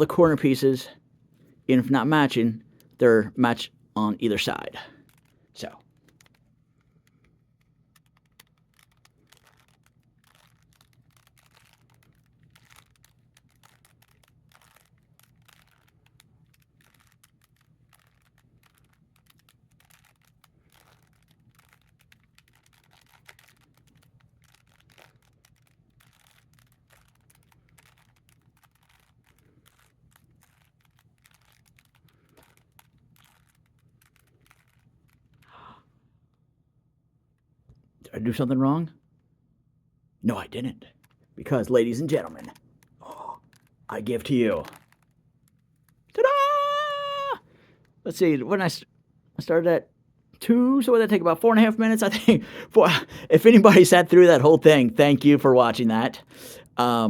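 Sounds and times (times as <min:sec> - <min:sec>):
plastic cube clicks: 0:04.4 - 0:35.6, 0:42.0 - 0:46.3.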